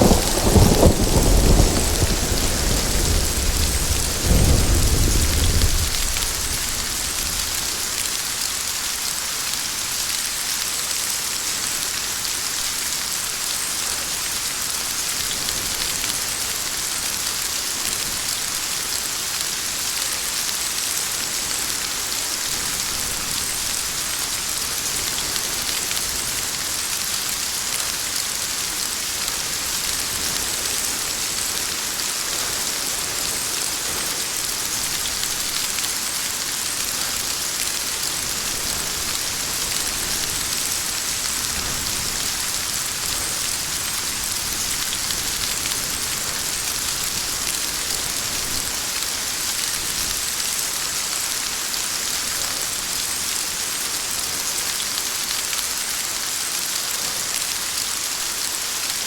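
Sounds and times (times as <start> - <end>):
thunder rumble: 0.0 - 7.5
heavy rain: 0.0 - 59.0.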